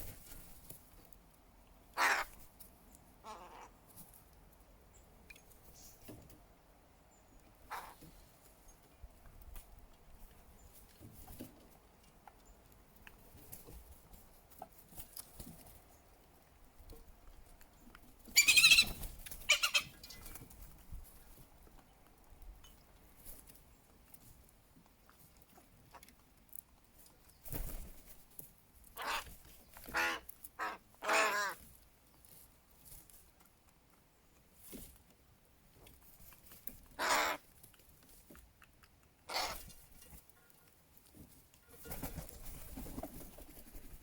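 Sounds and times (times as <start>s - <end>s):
crows cawing: 2.0s - 2.4s, 30.0s - 31.6s, 37.0s - 37.4s.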